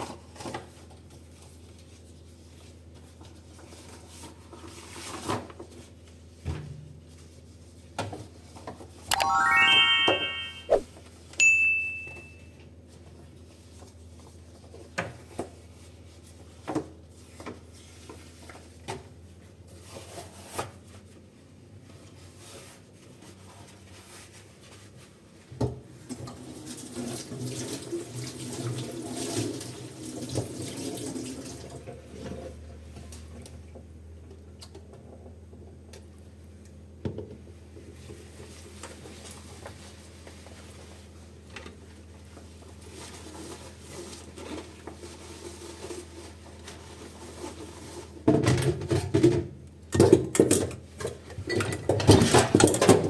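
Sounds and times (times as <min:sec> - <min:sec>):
short chime: 0:09.1 - 0:10.8, 0:11.4 - 0:12.4.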